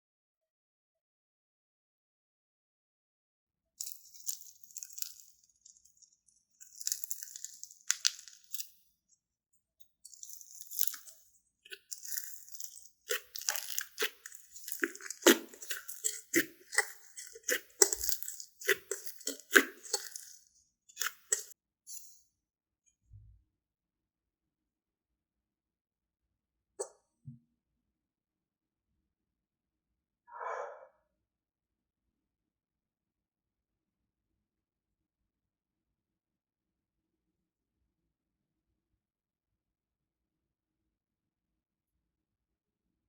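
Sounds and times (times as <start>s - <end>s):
slime squished by hand: 6.6s - 8.7s, 10.1s - 20.4s.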